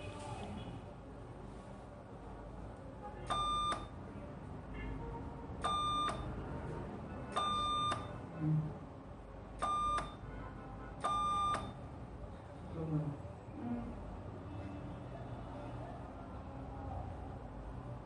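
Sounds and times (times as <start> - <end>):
medical equipment beeping: 3.3 - 4.0, 5.6 - 6.3, 7.4 - 8.2, 9.6 - 10.2, 11.0 - 11.8.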